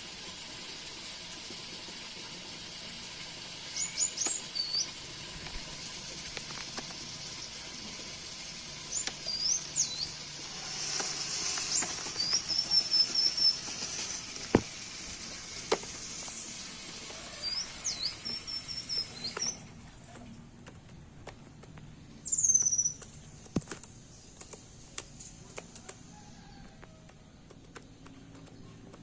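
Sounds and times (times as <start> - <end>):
steady high hiss: 2.8 - 19.6
thrush singing whistled notes: 3.7 - 5.0, 8.9 - 13.8, 17.2 - 19.7, 22.2 - 23.0.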